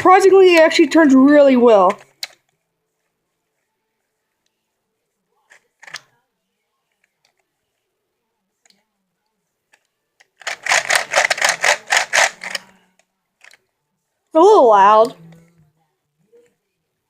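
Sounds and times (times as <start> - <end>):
plastic gear clacks: 5.5 - 6.1, 9.7 - 12.8, 13.4 - 13.6.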